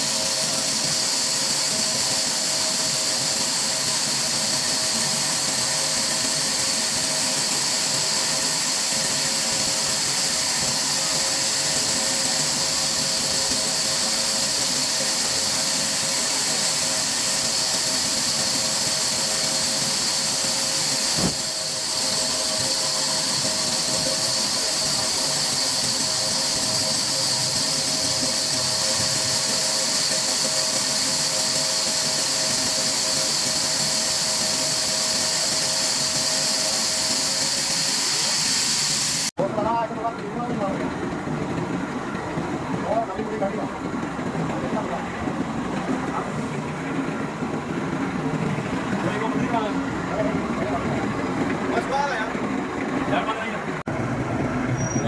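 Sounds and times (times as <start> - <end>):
whirring machine with hiss: 0.0 - 54.0.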